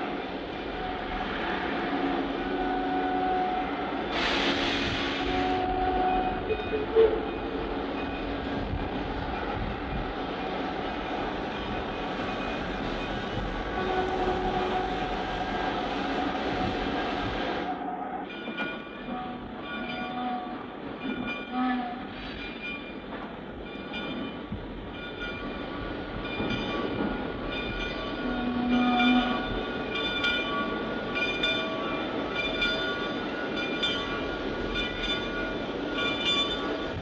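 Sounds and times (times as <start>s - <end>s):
rumble of moving trains: 0.0s - 37.0s
locomotive horn blasts: 0.8s - 3.9s, 4.8s - 7.3s, 13.7s - 15.2s.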